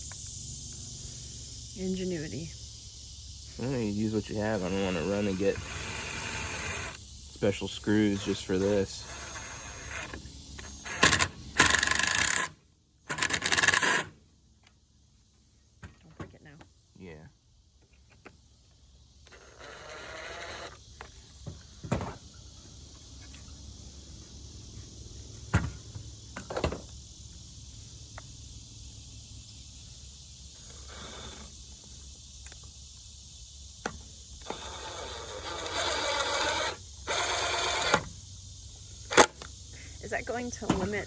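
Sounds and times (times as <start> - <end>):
screws knocking and clicking: 8.2 - 12.5, 13.1 - 14.1.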